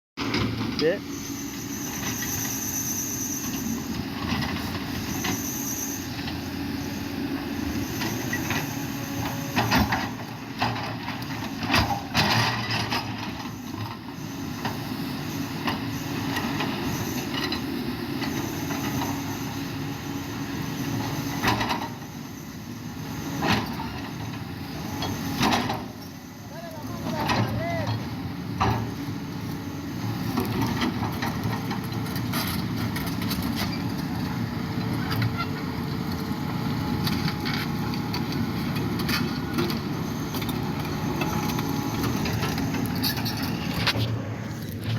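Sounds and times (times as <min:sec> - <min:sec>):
high squeal: 0:01.0 - 0:09.6, 0:39.9 - 0:44.2
machinery running: 0:30.0 - 0:44.9.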